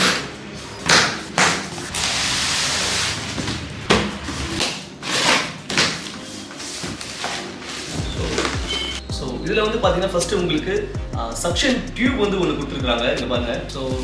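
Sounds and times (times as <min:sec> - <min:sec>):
cardboard box scraping and rustling: 0:01.8 - 0:08.6.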